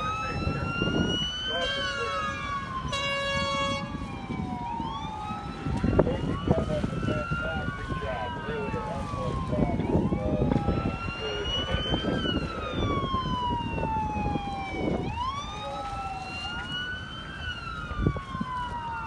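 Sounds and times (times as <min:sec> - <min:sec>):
wailing siren: 0:00.0 - 0:19.0
wind rumble on microphone: 0:00.0 - 0:19.0.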